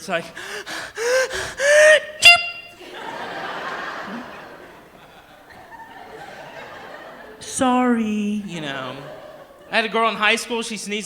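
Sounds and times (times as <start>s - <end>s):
man mimicking high-pitched sneeze: 0.0s - 2.7s
audience laughing: 0.0s - 11.0s.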